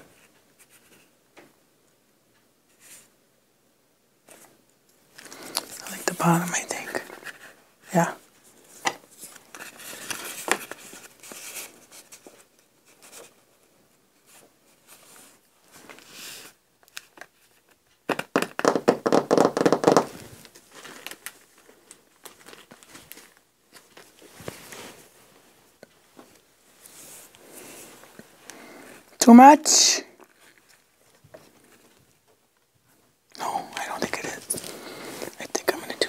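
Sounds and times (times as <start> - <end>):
paper rustling and crinkling: 8.4 - 13.6, 20.0 - 29.0.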